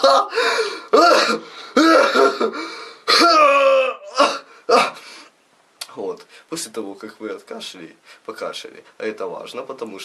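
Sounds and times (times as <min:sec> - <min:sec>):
man coughing: 0:00.0 - 0:03.5.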